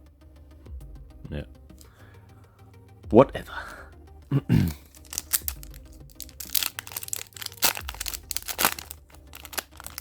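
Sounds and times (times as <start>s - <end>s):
card pack wrapper crinkling: 4.7s - 10.0s.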